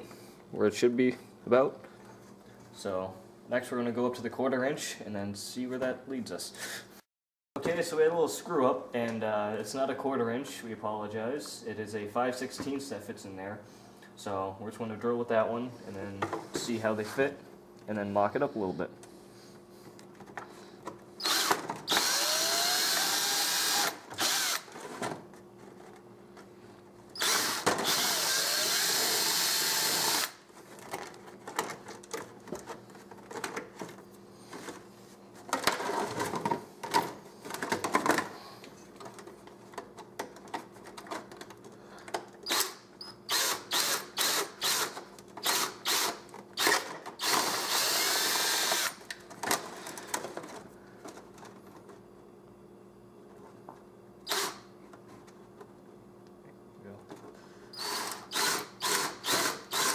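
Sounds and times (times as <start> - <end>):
power drill drilling plastic: 21.2 - 24.7, 27.2 - 30.4, 42.4 - 49.0, 54.3 - 54.6, 57.8 - 59.9.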